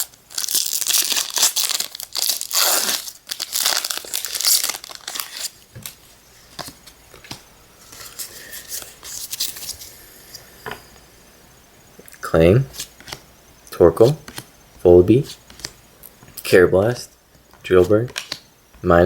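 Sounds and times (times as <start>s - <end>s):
foil wrapper crinkling and tearing: 0.0s - 5.6s
cards rustling and clicking: 12.7s - 13.3s, 14.0s - 14.5s, 15.2s - 15.8s, 17.6s - 18.4s.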